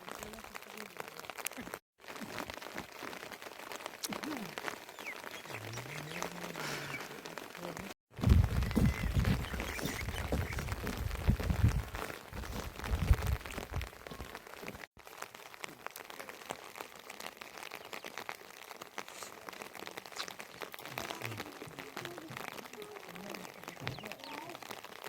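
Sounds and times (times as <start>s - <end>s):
rain pattering: 0.0s - 25.0s
wind buffeting microphone: 8.2s - 14.0s.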